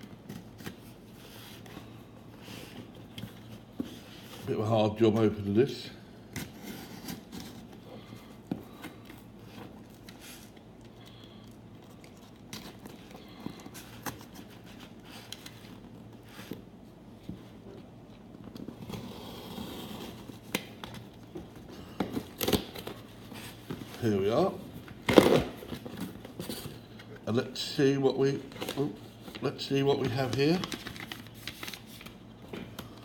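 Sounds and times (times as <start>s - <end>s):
packaging rustling and tearing: 30.0s - 33.0s.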